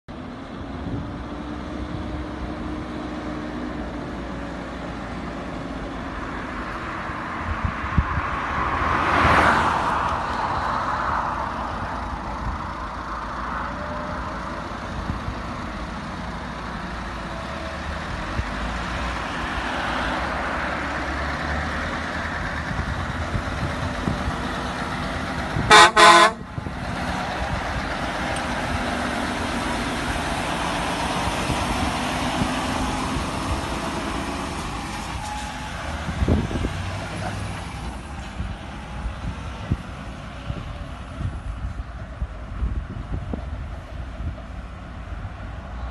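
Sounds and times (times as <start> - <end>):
heavy truck passing: 0.1 - 45.9
truck horn blast: 25.6 - 26.5.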